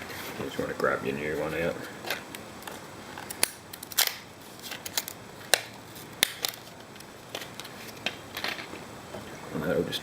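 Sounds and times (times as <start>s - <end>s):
plastic clicks and crackles: 2.1s - 8.8s.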